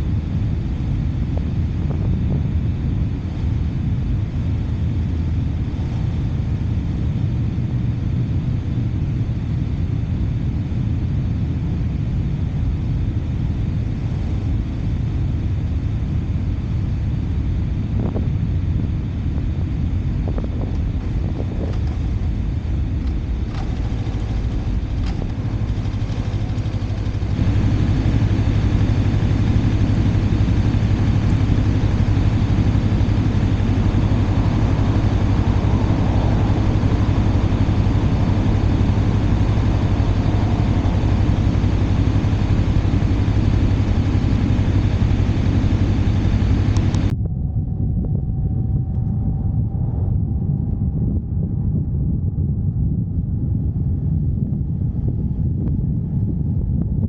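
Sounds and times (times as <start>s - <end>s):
road noise: 0.0s - 47.1s
motorcycle engine rumbling: 13.9s - 53.1s.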